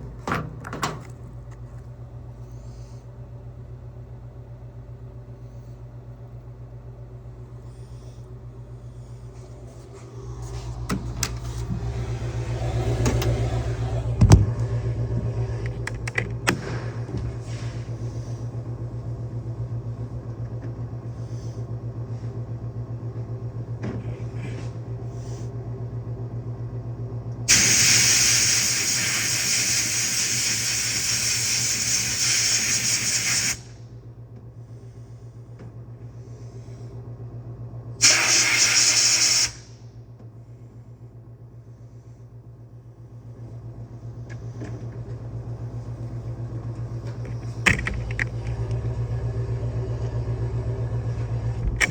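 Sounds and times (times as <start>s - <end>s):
motor hum: 0.0s - 27.5s, 39.7s - 51.9s
pressurised spray hissing: 27.5s - 33.6s
handling clicks and knocks: 47.1s - 48.8s.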